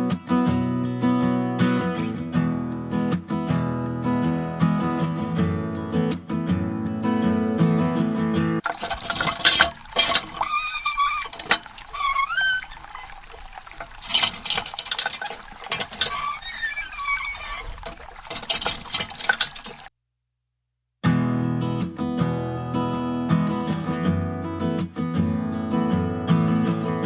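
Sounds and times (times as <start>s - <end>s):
hand pump clicks: 8.6s - 19.9s
water splashing into container: 8.6s - 19.9s
short squeaky tones: 9.4s - 18.6s.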